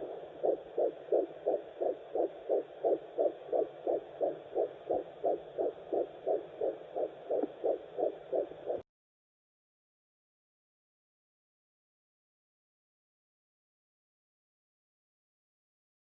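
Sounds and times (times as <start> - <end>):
faint steady hiss: 0.0 - 8.8
fetal heartbeat whooshing pulses: 0.0 - 8.8.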